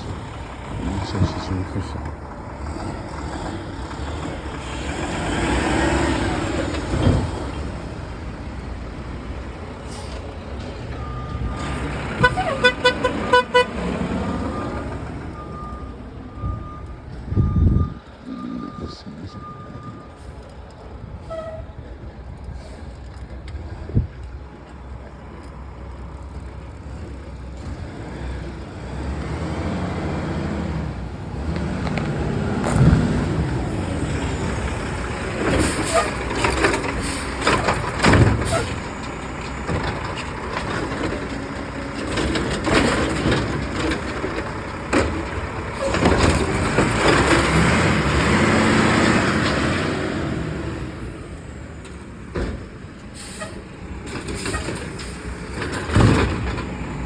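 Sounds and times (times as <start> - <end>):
garbage truck engine revving: 0.0 - 16.1, 26.8 - 52.3, 53.2 - 57.0.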